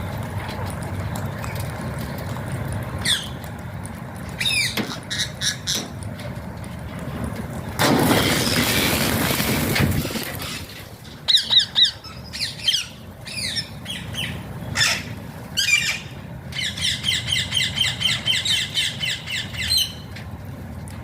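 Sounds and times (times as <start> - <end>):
steady low hum: 0.0 - 21.0
parakeet squawks and chirps: 4.4 - 5.9, 11.3 - 20.0.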